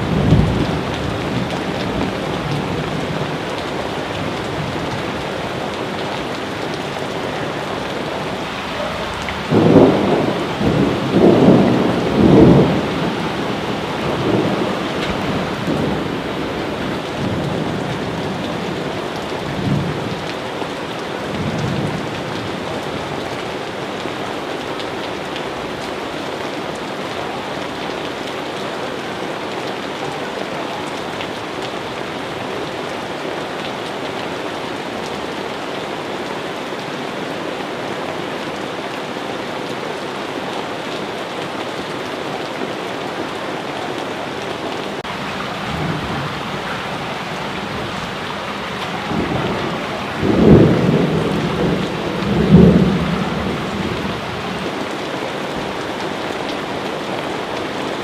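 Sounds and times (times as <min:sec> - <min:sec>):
steady rain falling: 0:00.0 - 0:58.0
low rumbles of thunder: 0:09.0 - 0:16.3, 0:45.3 - 0:54.6.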